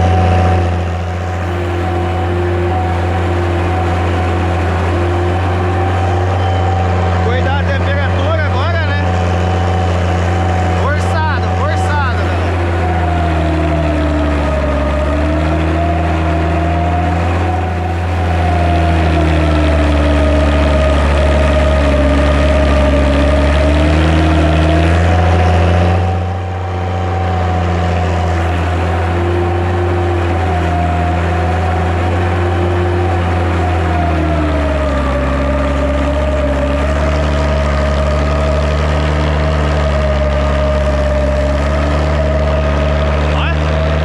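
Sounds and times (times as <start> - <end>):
tractor diesel engine running: 0.0 - 44.0.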